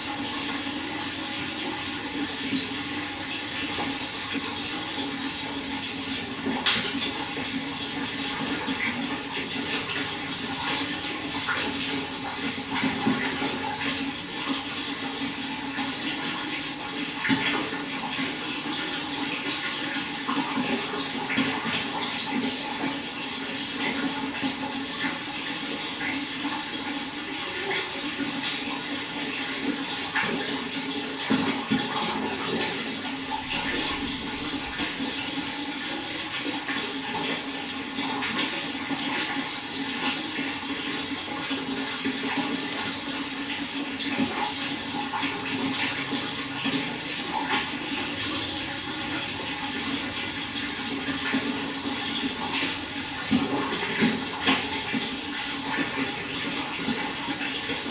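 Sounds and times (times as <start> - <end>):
running water splashing: 0.0 - 57.9.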